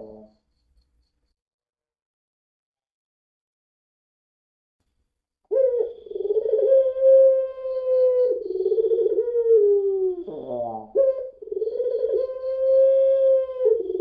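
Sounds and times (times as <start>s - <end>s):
dove cooing: 5.5s - 14.0s.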